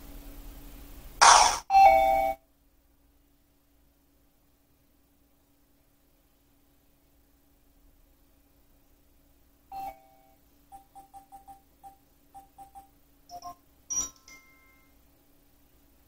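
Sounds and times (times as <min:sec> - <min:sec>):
smartphone alarm tones: 0:01.2 - 0:02.4.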